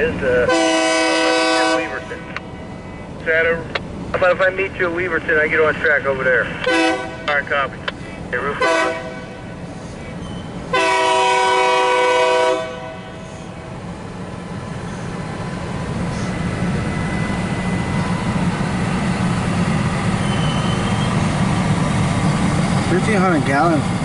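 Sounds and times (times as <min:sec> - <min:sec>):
engine and wheels rumbling: 0:00.0 - 0:24.0
train horn blast: 0:00.4 - 0:02.2, 0:06.6 - 0:07.4, 0:08.6 - 0:09.5, 0:10.7 - 0:13.6.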